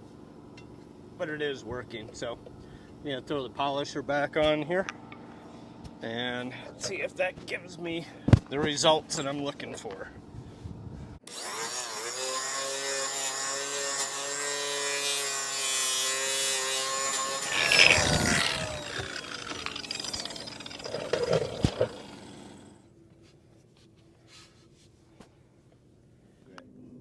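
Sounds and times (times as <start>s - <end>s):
electric polisher buffing metal: 11.3s - 22.8s.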